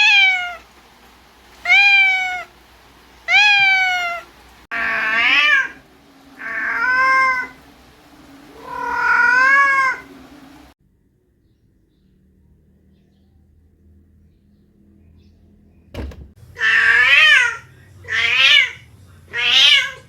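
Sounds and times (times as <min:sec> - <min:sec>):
cat meowing: 0:00.0 - 0:00.7, 0:01.6 - 0:02.5, 0:03.3 - 0:05.8, 0:06.4 - 0:07.6, 0:08.5 - 0:10.1, 0:16.6 - 0:20.0.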